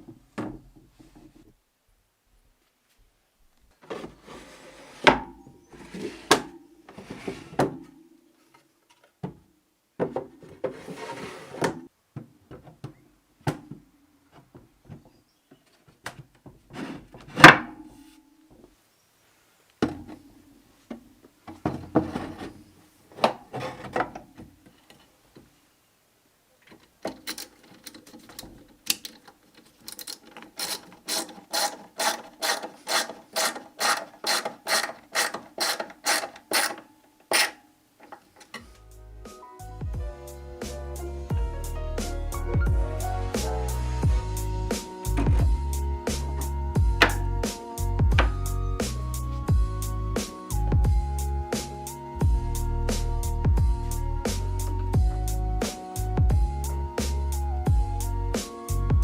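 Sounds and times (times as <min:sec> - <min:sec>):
wooden parts scraping: 0:10.3 - 0:11.9, 0:21.6 - 0:25.2, 0:26.6 - 0:38.8
even ratcheting clicks: 0:27.1 - 0:38.2.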